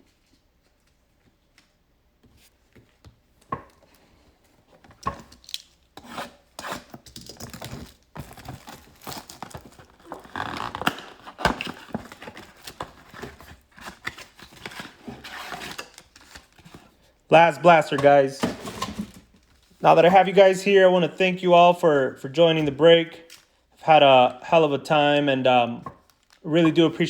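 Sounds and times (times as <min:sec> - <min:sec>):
cardboard and plastic wrap rustling: 0:06.9 - 0:20.8, 0:25.7 - 0:27.0.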